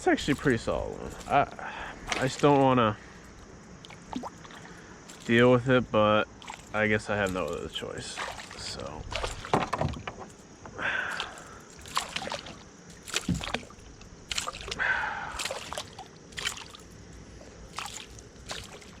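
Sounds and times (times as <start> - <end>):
water sloshing: 0.0 - 5.6, 6.3 - 19.0
knocks and clatter in kayak: 8.1 - 14.7.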